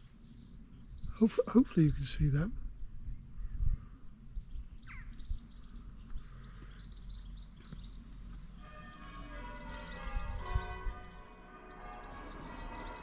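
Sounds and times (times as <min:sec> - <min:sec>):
low outdoor rumble: 0:00.0 - 0:11.3
small birds chirping: 0:00.0 - 0:13.0
church bells ringing: 0:08.2 - 0:13.0.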